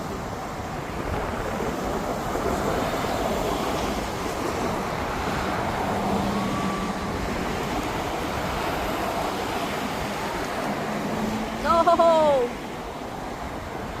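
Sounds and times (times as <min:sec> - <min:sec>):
road traffic: 0:00.0 - 0:14.0
wind: 0:00.0 - 0:14.0.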